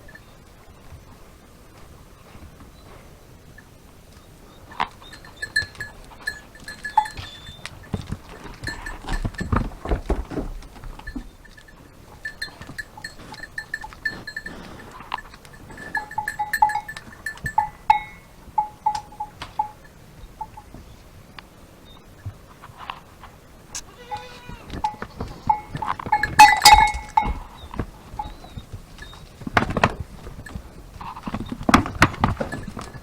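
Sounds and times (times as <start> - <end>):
lower-pitched goat bell clinking: 0.0 - 0.9, 2.3 - 4.0, 4.9 - 20.8, 23.8 - 33.0
higher-pitched goat bell clinking: 5.0 - 9.9, 10.8 - 20.7, 24.0 - 29.4, 30.0 - 33.0
scattered knocks: 24.8 - 33.0.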